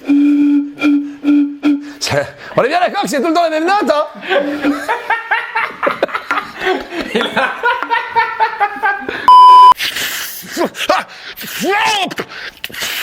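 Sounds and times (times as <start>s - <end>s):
laughter: 4.2s - 9.3s
high censor bleep: 9.3s - 9.8s.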